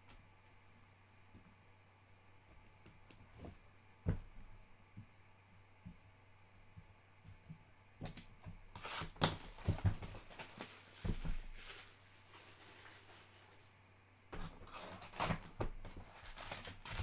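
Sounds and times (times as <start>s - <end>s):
foil wrapper crinkling and tearing: 8.8s - 13.6s, 14.5s - 17.0s.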